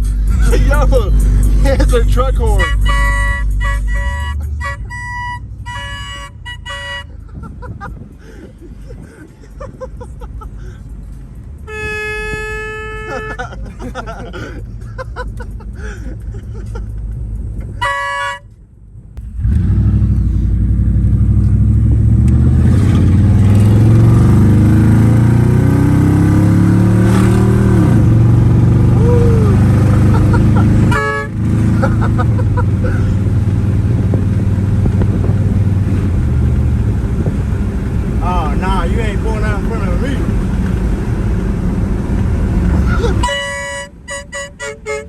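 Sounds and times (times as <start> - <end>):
vehicle engine rumbling: 0.0 - 45.0
short horn toot: 2.4 - 7.2, 11.7 - 13.5, 17.7 - 18.5, 30.8 - 31.5, 43.0 - 45.0.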